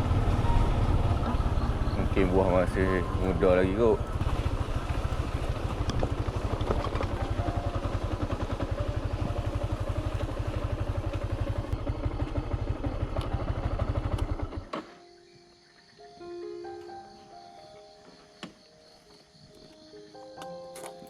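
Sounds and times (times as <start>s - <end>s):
small motorcycle engine putter: 5.1s - 14.8s.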